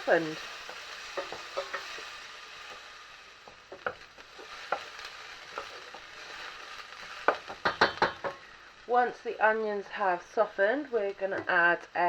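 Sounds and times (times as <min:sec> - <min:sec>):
onion and garlic sizzling in oil: 0:00.0 - 0:12.0
utensil scraping pan: 0:00.1 - 0:08.4.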